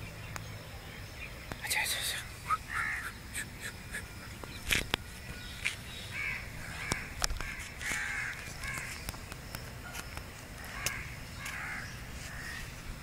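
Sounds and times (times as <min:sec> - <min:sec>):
crows cawing: 0:02.7 - 0:03.2, 0:06.1 - 0:09.1, 0:10.6 - 0:12.7.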